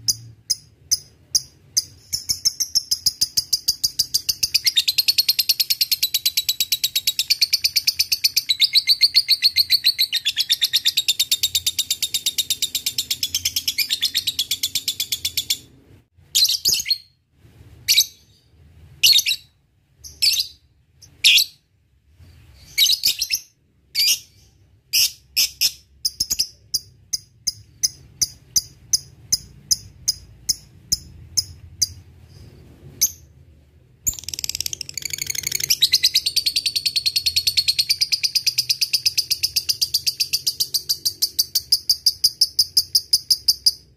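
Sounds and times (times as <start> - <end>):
high bird chirps: 0.0 - 17.2, 34.1 - 43.9.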